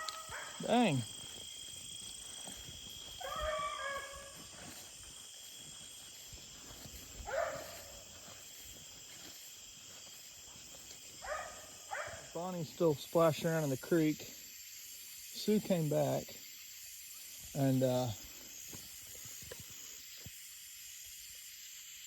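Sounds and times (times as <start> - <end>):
hound barking: 0.0 - 1.0, 3.2 - 4.5, 7.2 - 8.2, 11.2 - 12.3.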